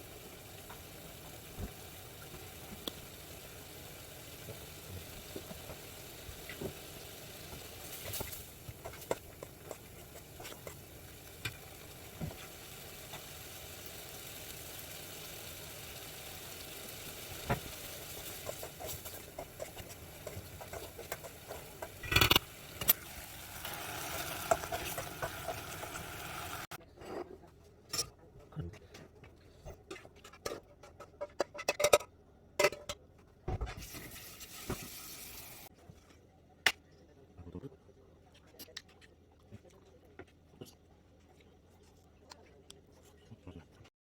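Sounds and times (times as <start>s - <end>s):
low steady sizzle: 0.0s - 26.8s, 33.6s - 35.8s.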